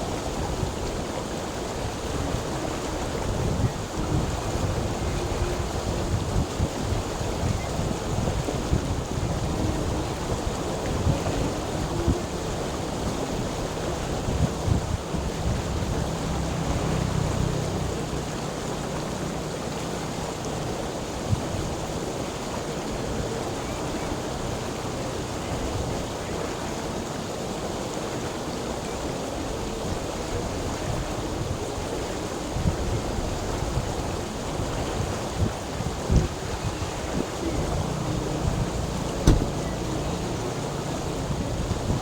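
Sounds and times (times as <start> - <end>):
water rushing: 0.0 - 42.0
low thumps: 37.5 - 40.1.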